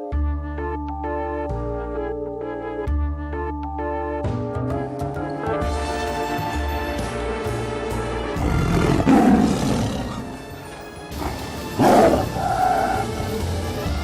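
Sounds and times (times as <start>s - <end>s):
background music: 0.0s - 14.0s
big cat roaring: 8.4s - 10.4s, 11.1s - 13.1s.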